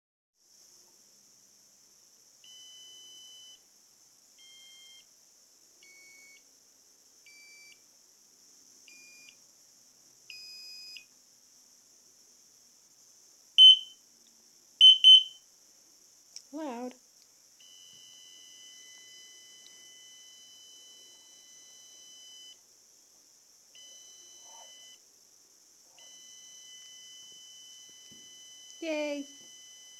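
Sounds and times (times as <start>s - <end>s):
high alarm buzzer beeps: 13.6s - 13.9s, 14.8s - 15.4s.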